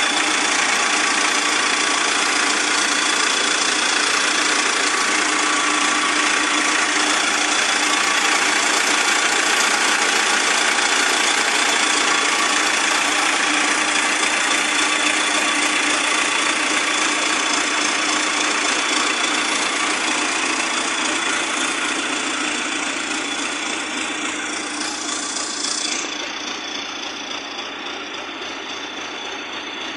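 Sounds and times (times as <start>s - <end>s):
tractor diesel engine running: 0.0s - 29.9s.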